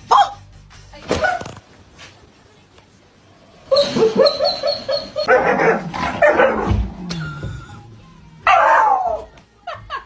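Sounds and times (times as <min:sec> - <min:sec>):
dog yelping: 0:03.7 - 0:06.7, 0:08.4 - 0:09.2
dog barking: 0:03.8 - 0:06.7, 0:08.5 - 0:09.2.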